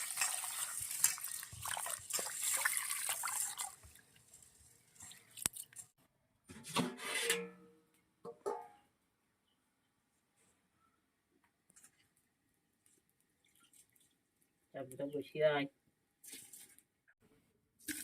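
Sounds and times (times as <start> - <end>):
water pouring and splashing: 0.0 - 6.0, 13.4 - 14.5, 16.2 - 16.8.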